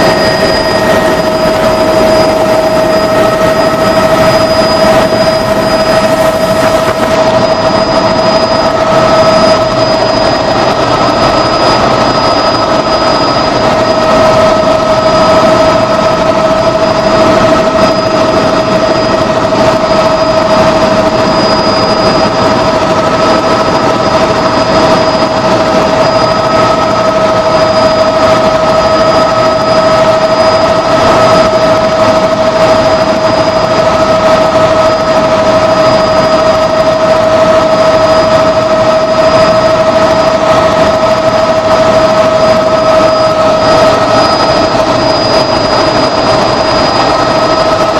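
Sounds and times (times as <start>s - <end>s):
helicopter turbine whine and rotors: 0.0s - 47.9s.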